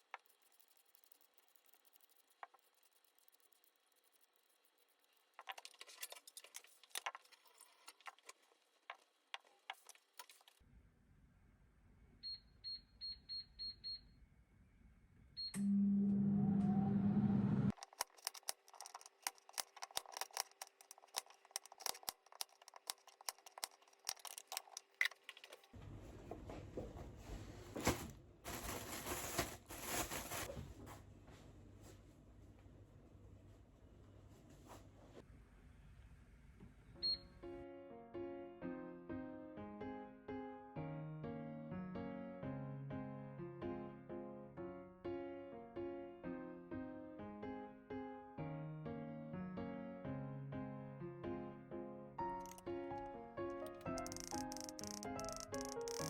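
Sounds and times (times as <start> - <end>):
clicking and rustling: 17.7 - 25.8, 52.4 - 52.7, 53.5 - 56.0
clicks and taps: 53.5 - 56.0.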